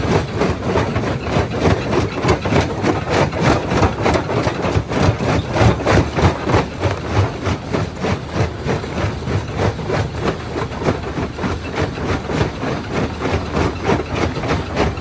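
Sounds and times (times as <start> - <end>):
rock crusher knocking: 0.0 - 15.0
machine drone: 8.5 - 15.0.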